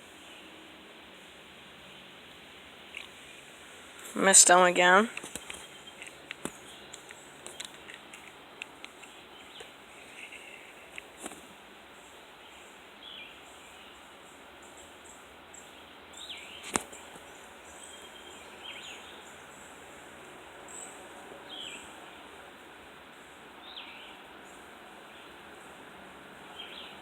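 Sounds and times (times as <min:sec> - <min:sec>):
faint outdoor hiss: 0:00.0 - 0:27.0
bird chirping: 0:04.3 - 0:08.0, 0:08.8 - 0:10.9, 0:12.4 - 0:14.0, 0:14.6 - 0:19.8, 0:20.7 - 0:22.2, 0:23.6 - 0:25.4, 0:26.5 - 0:27.0.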